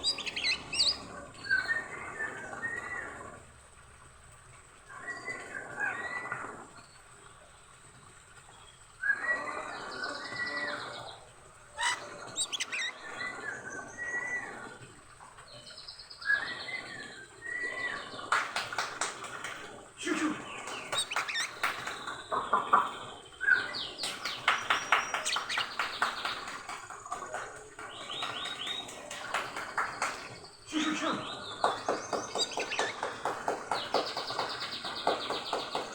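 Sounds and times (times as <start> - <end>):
songbird singing: 0.0 - 3.0, 11.8 - 14.4, 20.0 - 35.9.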